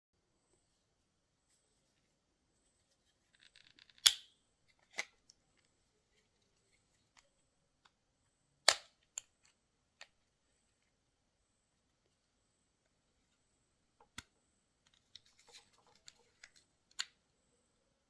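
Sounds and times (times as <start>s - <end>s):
plastic parts clicking and snapping: 3.4s - 5.3s.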